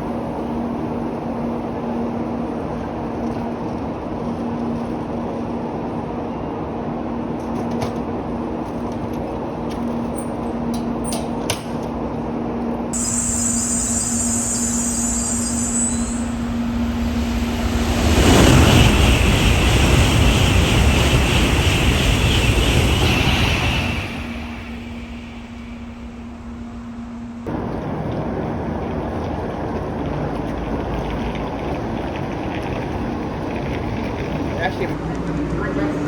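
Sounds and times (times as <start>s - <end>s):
train passing at speed: 0.0s - 36.0s
hiss: 13.0s - 19.7s
loud rush of noise: 13.0s - 28.7s.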